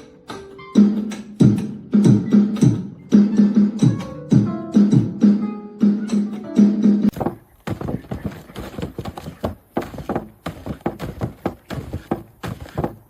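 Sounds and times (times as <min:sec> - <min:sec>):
music: 0:00.0 - 0:07.1
rapid irregular taps and knocks: 0:07.1 - 0:13.0.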